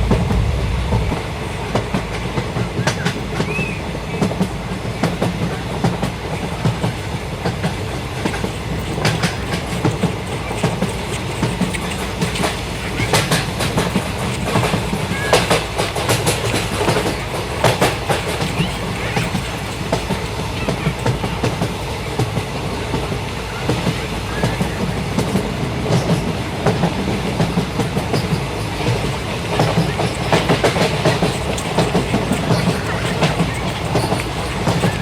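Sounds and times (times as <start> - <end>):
moving vehicle rumble: 0.0 - 3.7, 5.9 - 21.8, 28.0 - 35.0.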